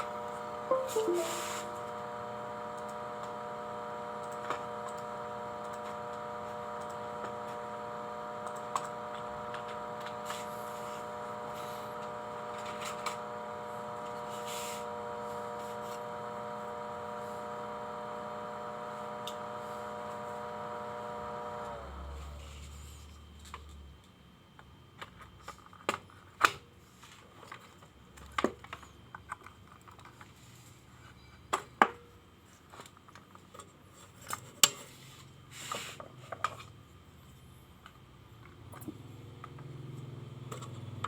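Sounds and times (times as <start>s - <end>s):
small device electrical hum: 0.0s - 25.7s.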